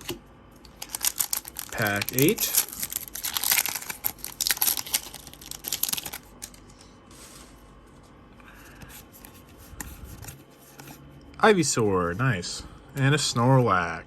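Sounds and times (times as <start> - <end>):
foil wrapper tearing and crinkling: 0.7 - 6.6.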